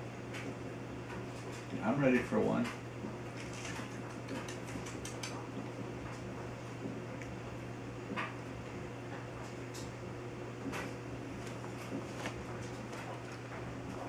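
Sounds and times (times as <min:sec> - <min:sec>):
steady low hum: 0:00.0 - 0:14.0
light clicks and taps: 0:03.4 - 0:05.5.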